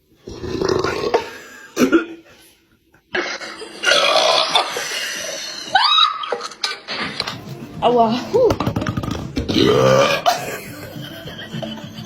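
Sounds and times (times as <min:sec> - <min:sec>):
person burping: 0:00.2 - 0:02.2, 0:03.1 - 0:05.6, 0:09.4 - 0:10.6.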